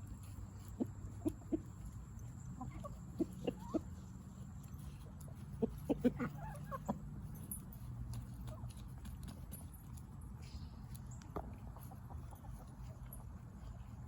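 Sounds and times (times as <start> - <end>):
chickens clucking: 0.2 - 14.0.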